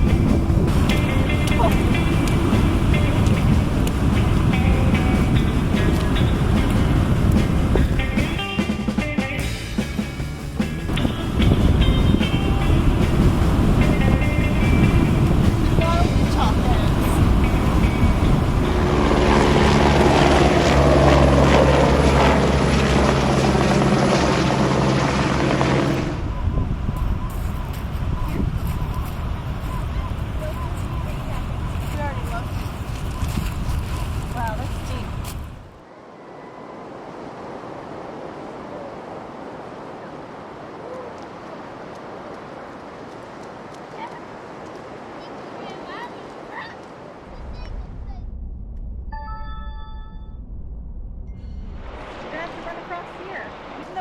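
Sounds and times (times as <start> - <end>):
engine drone: 0.0 - 28.3, 47.3 - 52.4
ocean surf breaking: 0.0 - 49.0, 51.4 - 54.0.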